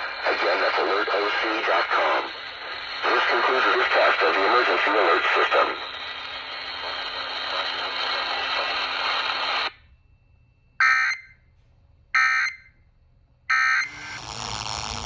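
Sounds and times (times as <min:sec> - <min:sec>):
steady hiss: 0:00.0 - 0:09.7.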